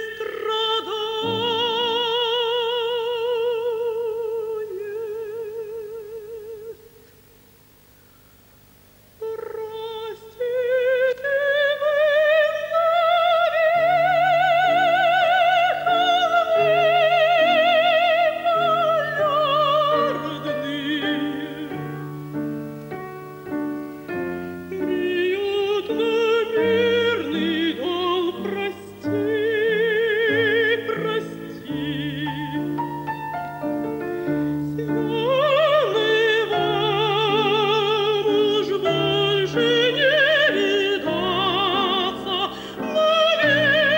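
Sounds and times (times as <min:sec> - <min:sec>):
woman singing opera: 0:00.0 - 0:07.0, 0:09.2 - 0:22.6, 0:23.6 - 0:43.9
piano accompaniment: 0:13.8 - 0:43.9.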